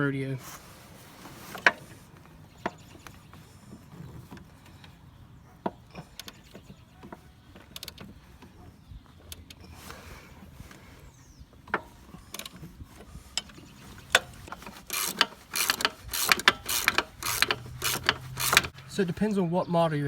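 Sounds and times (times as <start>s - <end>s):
socket ratchet clicking: 14.9s - 18.8s.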